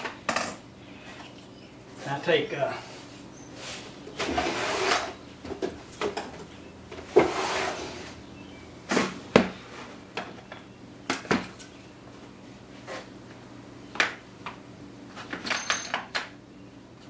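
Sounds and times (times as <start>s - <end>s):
tool rattling scrape: 4.2s - 5.2s, 7.1s - 8.2s.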